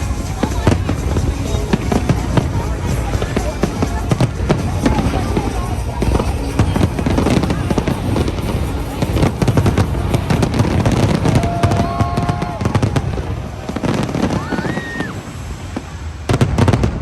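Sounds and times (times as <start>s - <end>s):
fireworks bangs and crackling: 0.0s - 17.0s.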